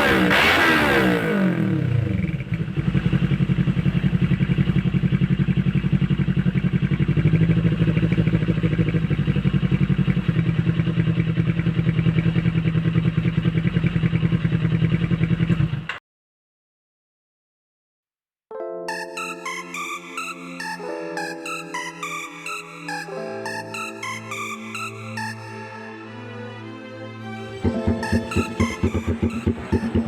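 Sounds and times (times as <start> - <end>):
motorcycle engine idling: 2.1 - 15.9, 27.6 - 30.0.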